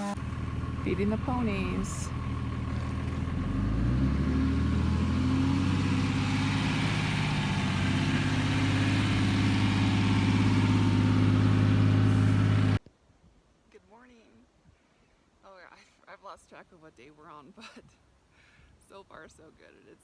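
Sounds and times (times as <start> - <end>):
vehicle engine revving: 0.0 - 12.8.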